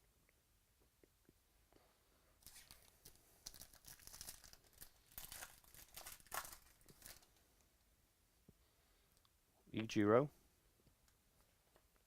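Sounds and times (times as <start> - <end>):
trading cards and packaging crinkling: 2.4 - 7.4.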